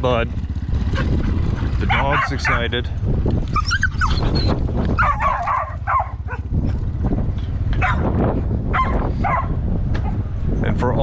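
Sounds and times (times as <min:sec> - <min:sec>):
dog whining and yipping: 0:00.9 - 0:01.3, 0:03.4 - 0:06.5, 0:08.7 - 0:09.5.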